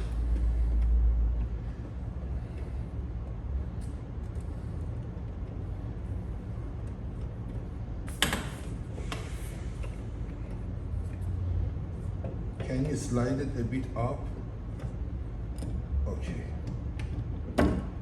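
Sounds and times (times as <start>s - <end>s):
steady low rumble: 0.0s - 8.1s.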